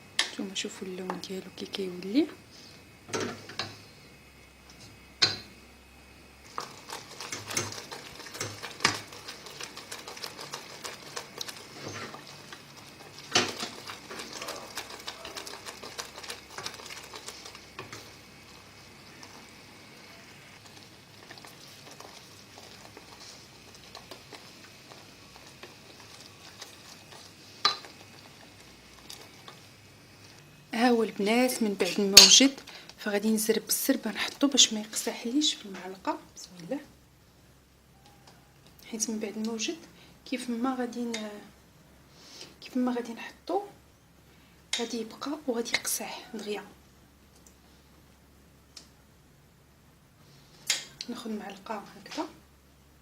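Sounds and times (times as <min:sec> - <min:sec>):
spoon scraping a pan: 0:06.5 - 0:18.2, 0:20.0 - 0:29.7.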